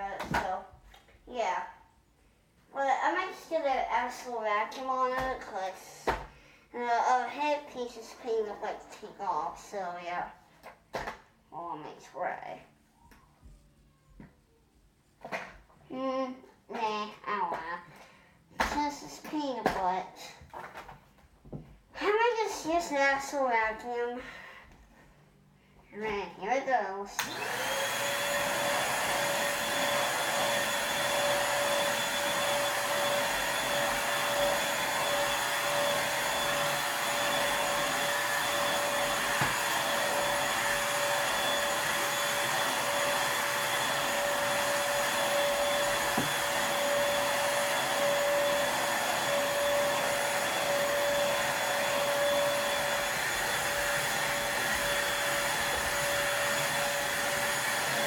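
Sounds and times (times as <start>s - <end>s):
vacuum cleaner running: 27.2s - 58.0s.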